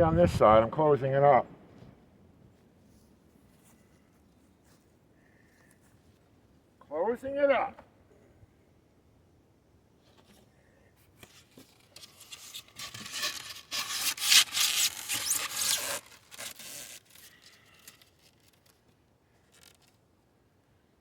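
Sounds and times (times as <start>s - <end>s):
hive parts scraping: 12.0s - 17.4s.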